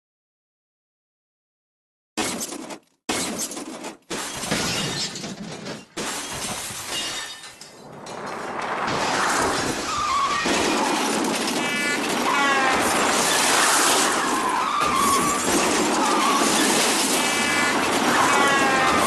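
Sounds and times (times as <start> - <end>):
glass shattering: 4.1 - 8.0, 9.0 - 19.0
tyres squealing: 9.8 - 19.0.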